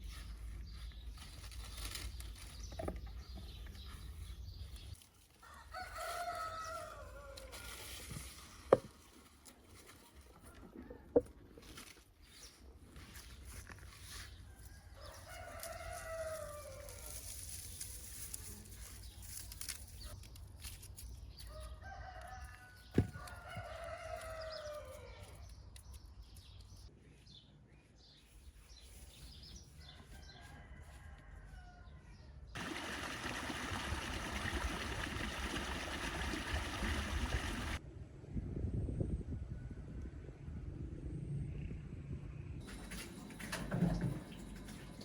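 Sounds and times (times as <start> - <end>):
rooster crowing: 5.4 - 7.6, 30.1 - 32.0.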